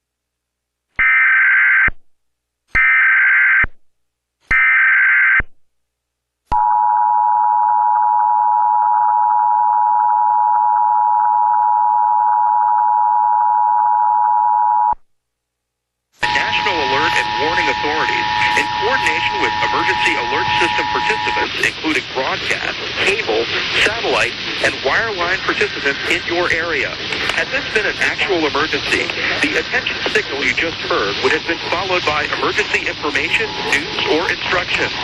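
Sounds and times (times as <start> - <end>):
warbling digital data bursts: 16.2 - 35.0.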